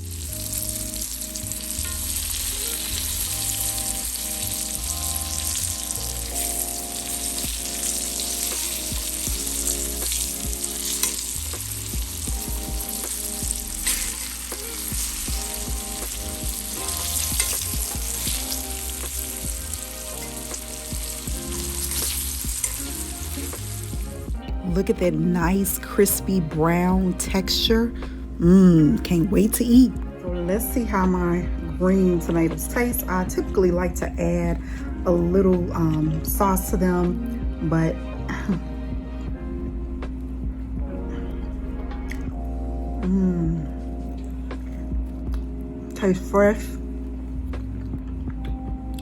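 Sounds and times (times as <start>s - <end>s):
tomato slices frying in oil: 0.0s - 24.3s.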